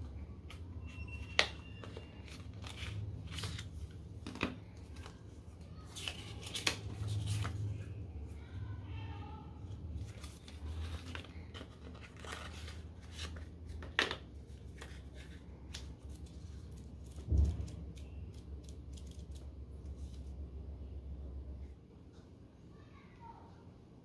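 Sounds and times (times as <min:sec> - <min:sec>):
packaging clicks and rustles: 0:00.4 - 0:07.8, 0:10.0 - 0:19.5.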